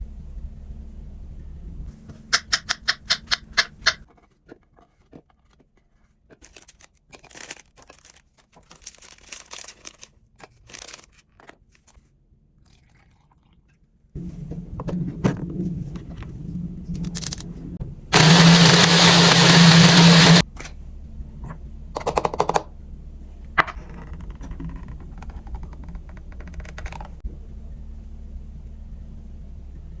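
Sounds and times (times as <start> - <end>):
electric blender whirring: 18.1 - 20.4.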